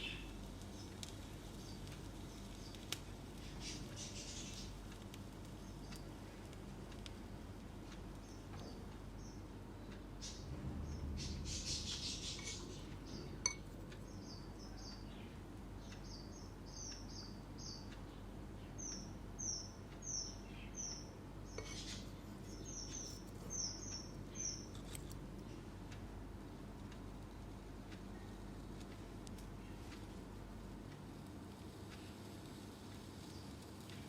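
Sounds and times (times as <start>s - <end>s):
bird chirping: 3.4s - 4.8s, 8.2s - 25.6s.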